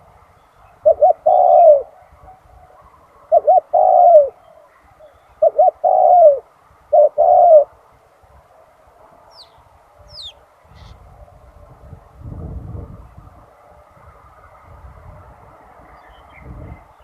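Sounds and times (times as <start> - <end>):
dove cooing: 0.6 - 7.9
small bird chirping: 9.3 - 11.0.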